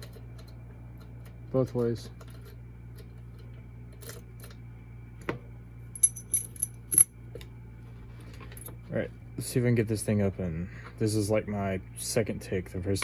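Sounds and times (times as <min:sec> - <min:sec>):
keys jingling: 0:06.0 - 0:07.1.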